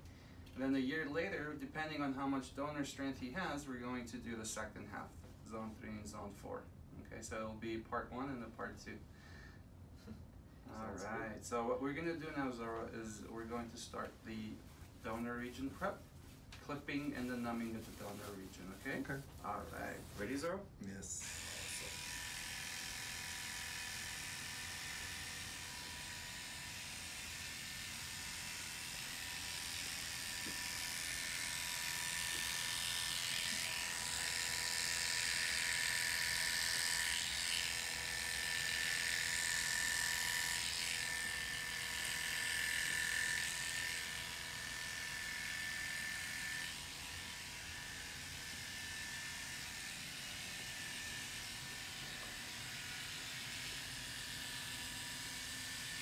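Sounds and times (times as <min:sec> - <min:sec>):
electric hair clippers buzzing: 0:21.2 - 0:56.0.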